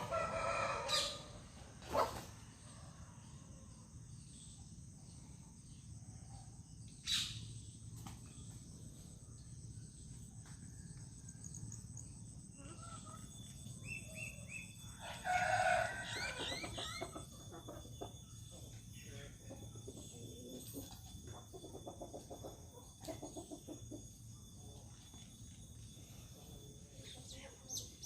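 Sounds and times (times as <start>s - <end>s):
rooster crowing: 0.0s - 1.5s, 14.2s - 17.3s
low background hum: 0.0s - 28.0s.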